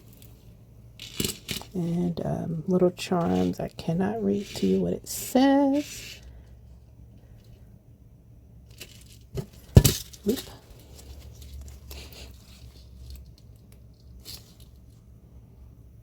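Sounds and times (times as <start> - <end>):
rustling and clinking of handling: 0.0 - 7.7, 8.6 - 15.2
metal jewelry knocking on table: 9.4 - 10.2.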